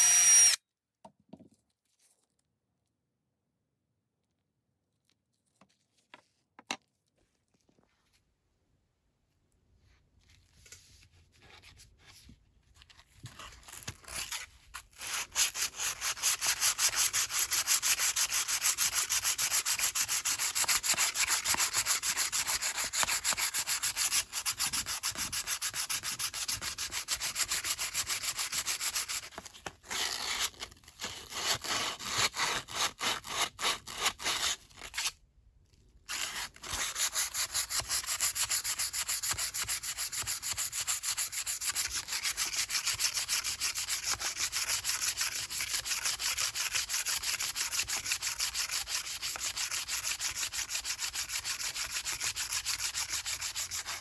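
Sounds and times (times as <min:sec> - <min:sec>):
hand sanding metal: 0:15.0 - 0:29.3, 0:36.8 - 0:54.0.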